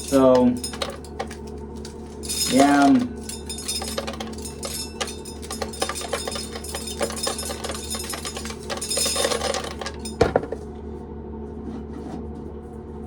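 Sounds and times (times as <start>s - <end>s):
corn kernels clattering: 0.0s - 10.4s
fan humming: 0.0s - 11.0s.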